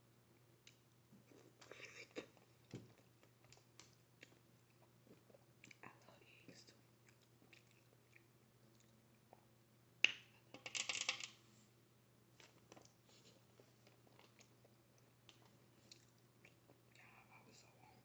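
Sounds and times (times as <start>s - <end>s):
faint eating clicks: 0.3s - 9.5s, 13.8s - 17.8s.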